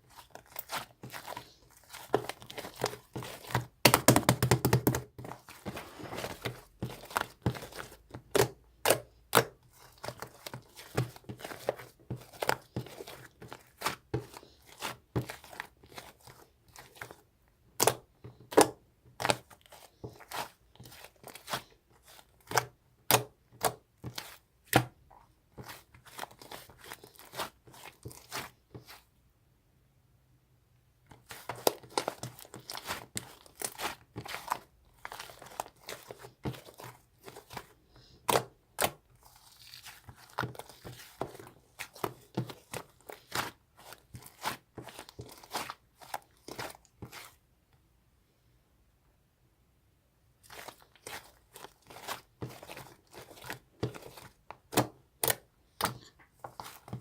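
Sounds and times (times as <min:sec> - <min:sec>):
crinkling and rustling: 0:00.0 - 0:29.1, 0:31.1 - 0:47.4, 0:50.4 - 0:57.0.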